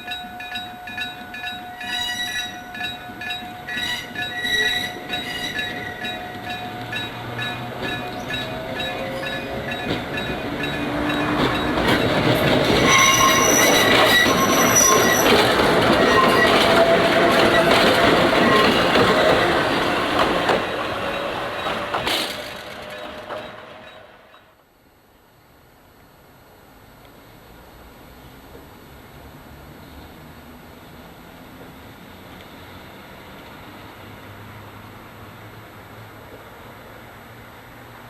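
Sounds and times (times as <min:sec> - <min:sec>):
train running rumble: 0:00.0 - 0:24.3
train wheels squealing on rails: 0:00.0 - 0:24.6.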